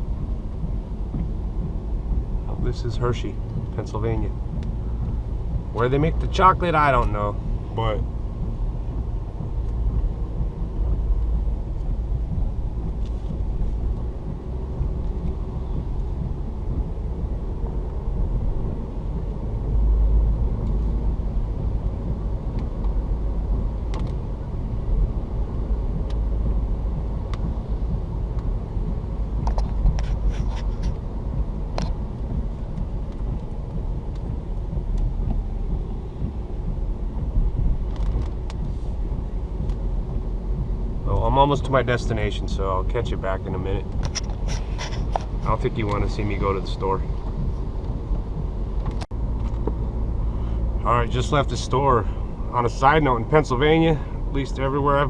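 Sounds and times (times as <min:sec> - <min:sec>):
car road and engine rumble: 0:00.0 - 0:55.0
faint ticks: 0:26.0 - 0:26.6, 0:27.2 - 0:40.3.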